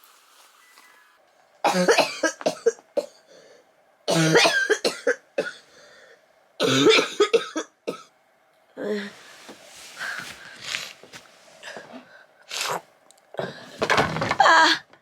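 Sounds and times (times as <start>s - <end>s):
person coughing hard: 1.7s - 3.2s, 4.1s - 5.6s, 6.6s - 8.1s.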